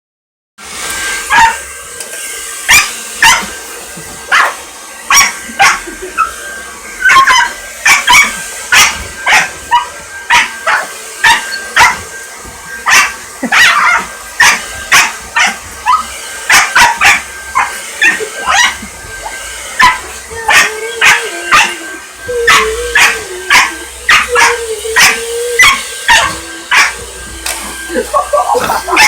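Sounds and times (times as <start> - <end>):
hair dryer drone: 0.6 - 29.0
small dog barking: 2.7 - 3.5, 4.3 - 5.8, 7.0 - 12.0, 12.9 - 18.8, 22.5 - 27.0.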